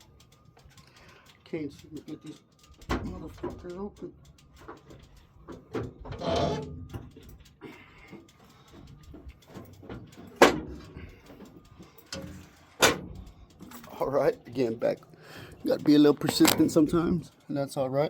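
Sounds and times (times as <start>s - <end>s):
metal latches rattling and clicking: 4.5s - 14.8s, 15.5s - 17.1s.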